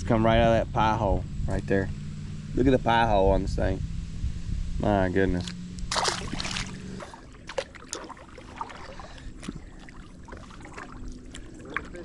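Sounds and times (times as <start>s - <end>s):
faint water sounds: 5.3s - 12.0s.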